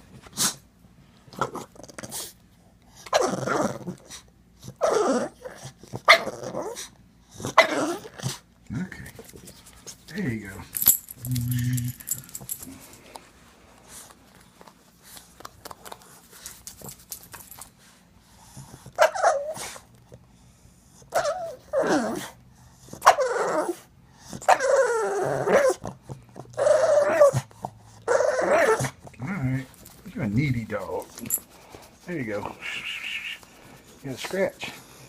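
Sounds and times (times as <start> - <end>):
dog whining and grumbling: 3.0 - 8.4, 10.8 - 12.8, 19.0 - 19.8, 21.0 - 29.7.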